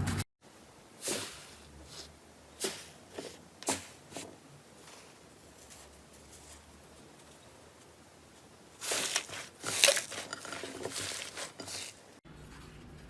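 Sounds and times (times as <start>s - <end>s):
faint hiss: 0.4s - 9.9s.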